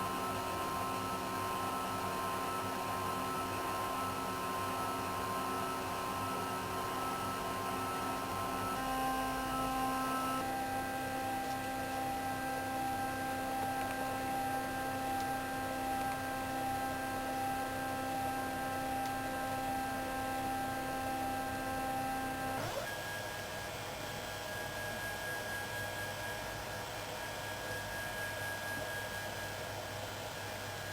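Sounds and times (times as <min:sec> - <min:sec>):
stepper motors whining: 0:07.1 - 0:10.5.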